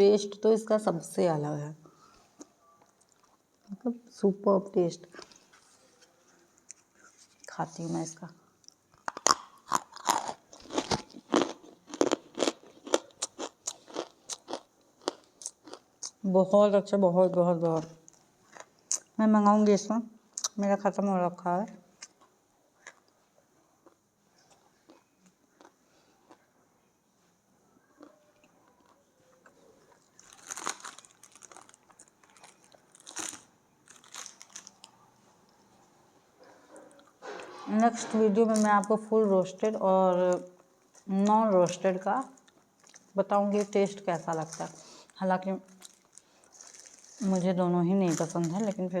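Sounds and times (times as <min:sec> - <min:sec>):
crunching of clay being chewed: 0:08.6 - 0:16.2, 0:23.8 - 0:26.5, 0:28.0 - 0:35.0.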